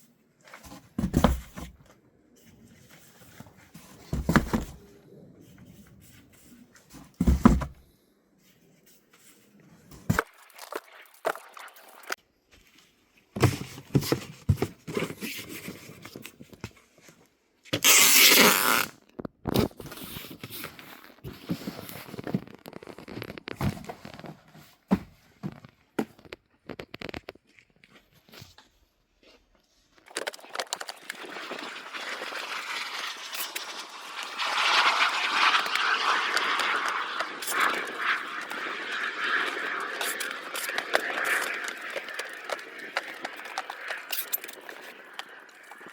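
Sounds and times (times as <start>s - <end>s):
boxes being handled: 0.6s - 1.9s, 2.8s - 4.8s, 7.0s - 7.8s, 13.3s - 16.5s
tearing noise: 17.8s - 19.0s.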